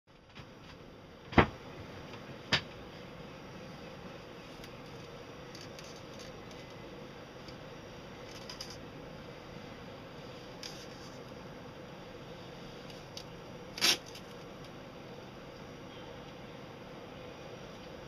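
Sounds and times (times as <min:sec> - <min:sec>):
steady low hum: 0:00.1 - 0:18.0.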